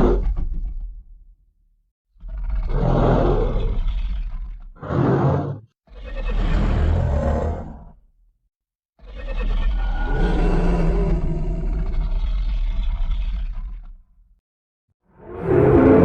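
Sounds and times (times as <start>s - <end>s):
monster roaring: 15.2s - 16.0s.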